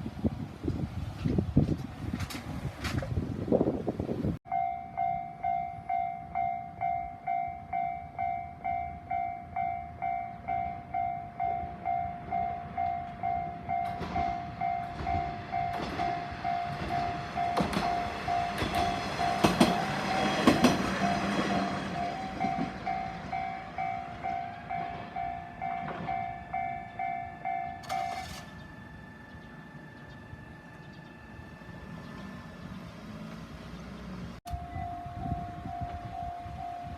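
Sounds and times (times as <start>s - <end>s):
diesel railcar passing: 0.0s - 36.9s
level-crossing warning bell: 4.5s - 32.8s, 34.5s - 36.9s
wheels clicking over rail joints: 12.8s - 25.0s.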